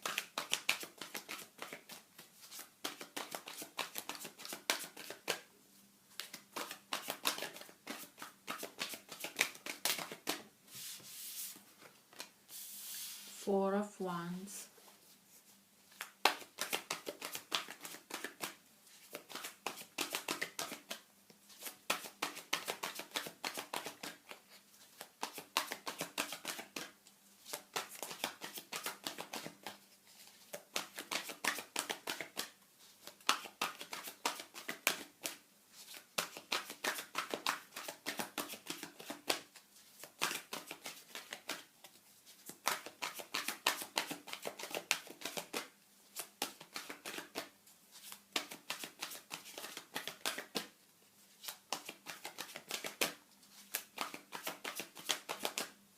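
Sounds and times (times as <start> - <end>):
cards being shuffled: 0.0 - 5.4, 6.2 - 13.3, 15.9 - 50.7, 51.4 - 55.7.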